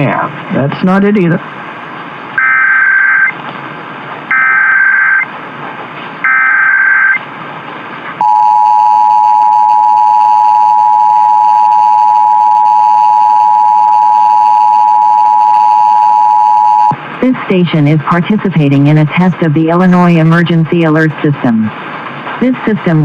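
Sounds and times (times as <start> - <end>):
digital data tone bursts: 2.4 - 3.4, 4.3 - 5.3, 6.2 - 7.2
radio static: 2.4 - 3.4, 4.3 - 5.2
two-tone attention signal: 8.2 - 17.0.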